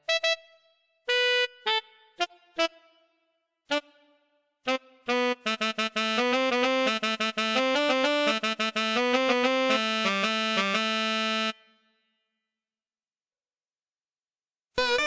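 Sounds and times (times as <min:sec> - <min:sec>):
keyboard melody in harmony: 0:03.7 - 0:11.7.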